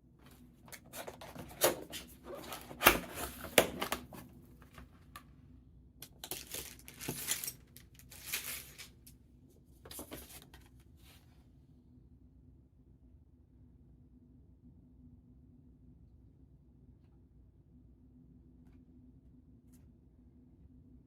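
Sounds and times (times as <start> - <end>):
packaging rustling and crinkling: 0.7 - 5.0, 6.0 - 9.1, 9.8 - 10.8.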